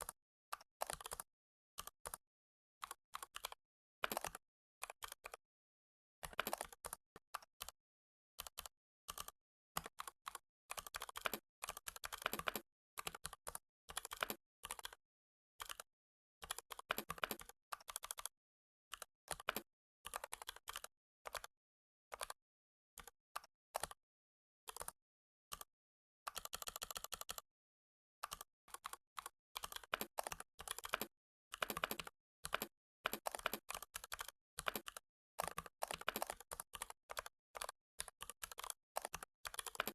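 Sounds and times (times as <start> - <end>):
keyboard typing: 29.6 - 37.7, 38.4 - 39.9.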